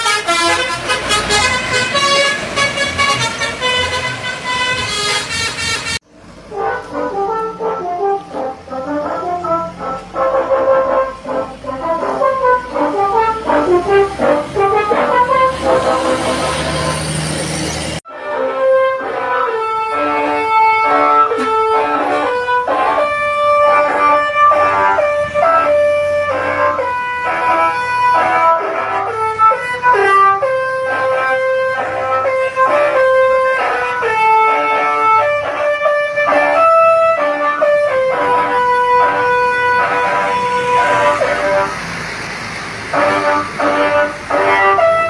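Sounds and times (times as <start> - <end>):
bus melody horn: 0.0 - 45.0.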